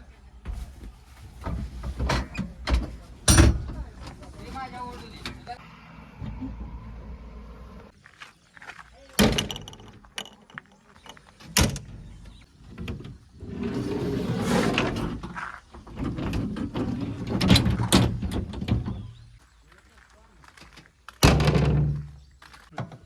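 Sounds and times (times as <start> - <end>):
metal knocks and clanks: 0.4 - 5.4, 9.2 - 11.9
rushing scraping noise: 13.4 - 15.2.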